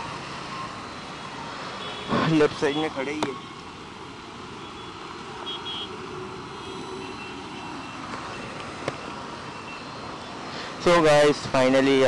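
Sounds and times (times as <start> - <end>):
traffic road noise: 0.0 - 12.0
faint high beep: 6.8 - 10.0.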